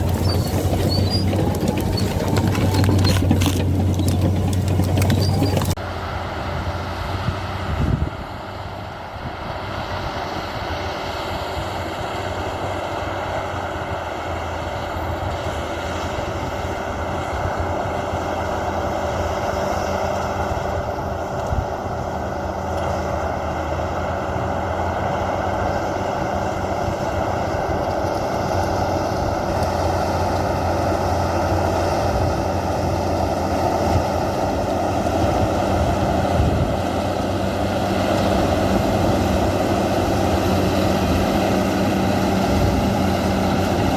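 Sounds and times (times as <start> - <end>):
bulldozer diesel engine running: 0.0 - 6.7, 12.3 - 43.9.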